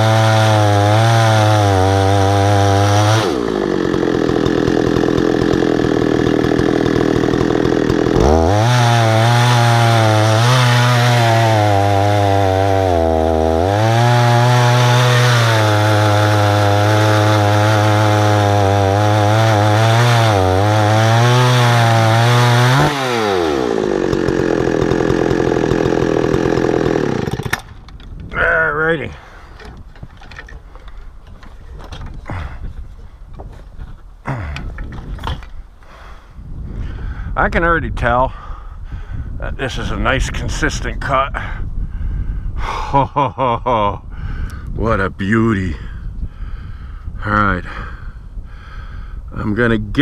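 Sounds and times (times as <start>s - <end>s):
chainsaw cutting wood: 0.0s - 28.2s, 29.2s - 32.8s, 33.4s - 36.0s.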